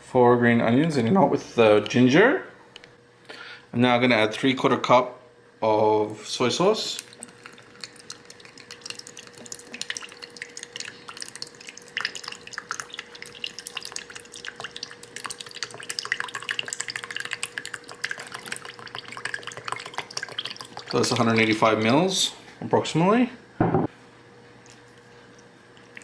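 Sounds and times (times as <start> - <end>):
liquid trickling and dripping: 6.8 - 22.0, 24.6 - 26.0.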